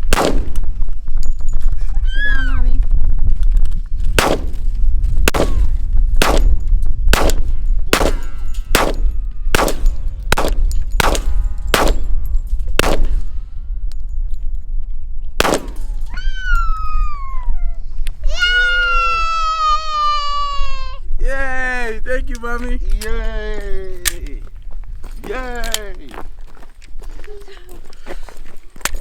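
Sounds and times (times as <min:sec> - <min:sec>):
gunshots: 0:00.0 - 0:00.7, 0:04.2 - 0:13.4, 0:15.4 - 0:16.1
wind rumble on microphone: 0:00.0 - 0:29.0.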